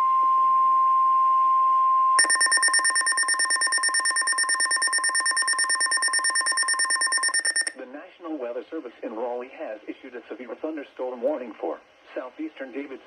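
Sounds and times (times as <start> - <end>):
steady high alarm tone: 2.2 - 7.7
rapid electronic beeping alarm: 2.2 - 7.8.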